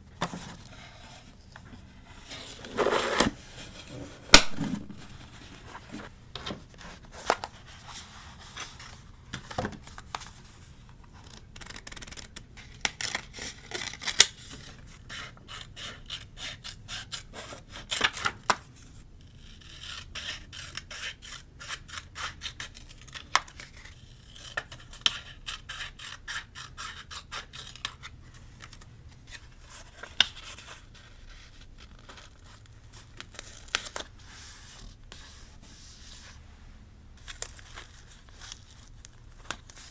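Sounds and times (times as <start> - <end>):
paper rubbing and scraping: 0.5 - 6.1, 29.2 - 36.4.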